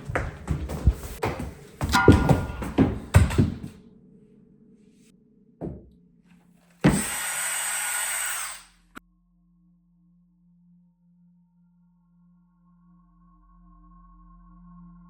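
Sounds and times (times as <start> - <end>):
dull thump: 1.8 - 3.7
power drill whining: 6.8 - 9.0.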